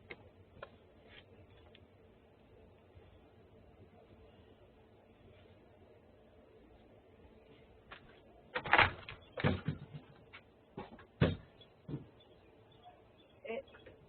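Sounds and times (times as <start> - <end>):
irregular knocks and clatters: 7.9 - 12.2.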